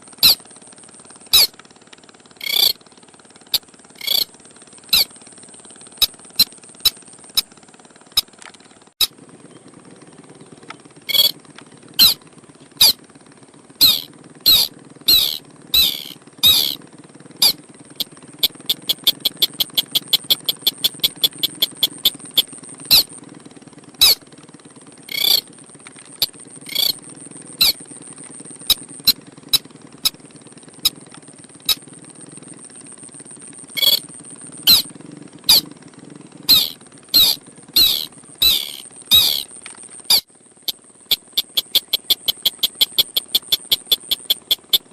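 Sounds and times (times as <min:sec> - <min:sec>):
crake squeaky calls: 0:01.3 - 0:01.5, 0:02.4 - 0:02.8, 0:03.5 - 0:04.3, 0:04.9 - 0:05.1, 0:11.1 - 0:11.4, 0:12.0 - 0:12.2, 0:13.8 - 0:16.8, 0:17.4 - 0:17.6, 0:18.4 - 0:23.2, 0:24.0 - 0:24.2, 0:25.1 - 0:25.5, 0:26.2 - 0:27.0, 0:27.6 - 0:27.8, 0:33.8 - 0:34.0, 0:34.7 - 0:34.9, 0:35.5 - 0:35.7, 0:36.5 - 0:44.9
steady high-pitched whine: 0:02.4 - 0:02.9, 0:13.8 - 0:16.8, 0:31.7 - 0:35.6, 0:36.4 - 0:44.9.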